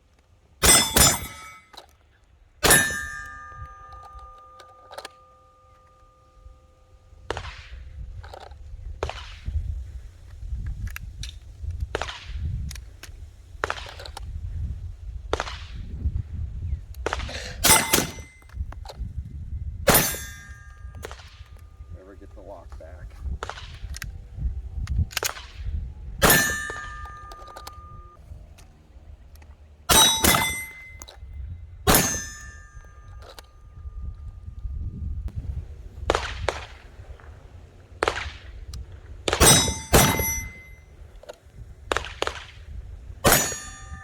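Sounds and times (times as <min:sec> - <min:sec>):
steel plate ringing: 0:00.6 - 0:01.8, 0:02.6 - 0:07.3, 0:17.6 - 0:18.5, 0:19.9 - 0:21.8, 0:26.2 - 0:28.2, 0:29.9 - 0:34.0, 0:39.4 - 0:41.0, 0:43.2 - 0:44.0
handgun shots: 0:39.3 - 0:40.8.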